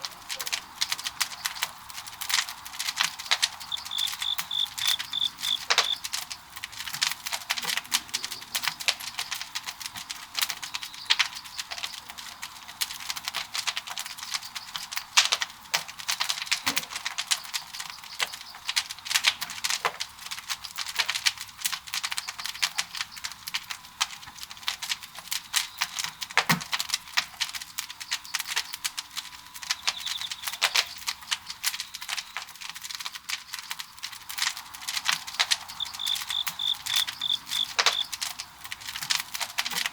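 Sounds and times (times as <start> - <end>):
fire hissing: 0.0 - 39.9
firewood crackling and popping: 0.0 - 39.9.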